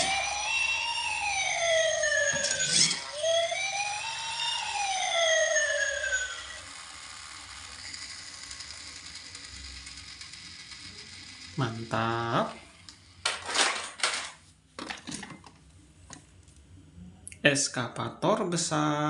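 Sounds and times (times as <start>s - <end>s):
toy police car siren wailing: 0.0s - 11.8s.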